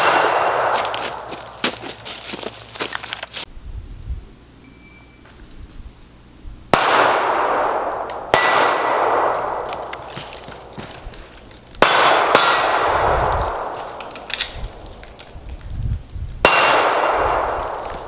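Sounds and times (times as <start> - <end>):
steel target ringing: 0.0 - 1.3, 6.7 - 9.9, 16.4 - 17.6
pistol shots: 6.7 - 10.0, 11.8 - 14.6, 16.4 - 17.8.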